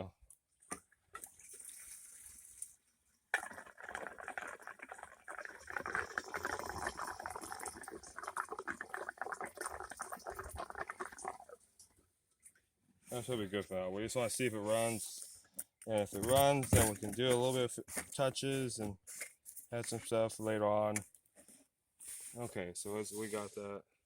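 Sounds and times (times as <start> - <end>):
fuel pouring into tank: 1.1 - 12.0.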